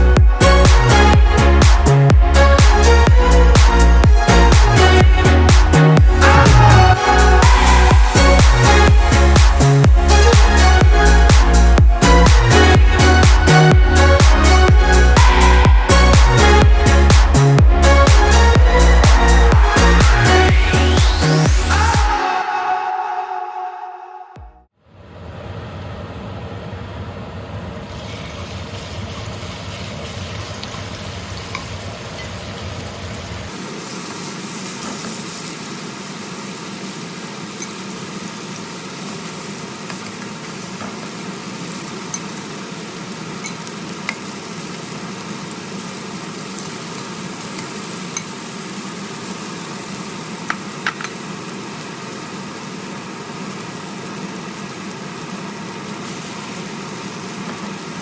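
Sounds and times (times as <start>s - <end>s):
low hum: 0.0s - 22.2s, 23.5s - 30.4s
food sizzling in a pan: 27.9s - 58.0s.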